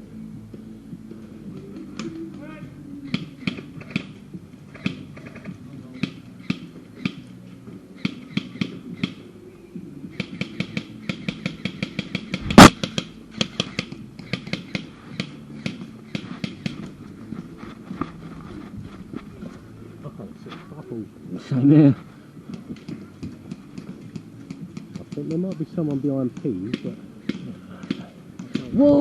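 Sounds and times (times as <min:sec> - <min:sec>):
loud crack: 0:12.4 - 0:13.0
airsoft gun shots: 0:12.4 - 0:13.6.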